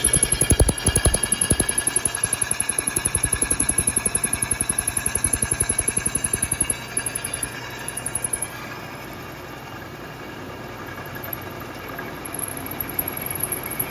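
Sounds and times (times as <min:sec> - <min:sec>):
rapid fluttering pulse: 0:00.0 - 0:08.5
milling machine running: 0:00.0 - 0:08.7.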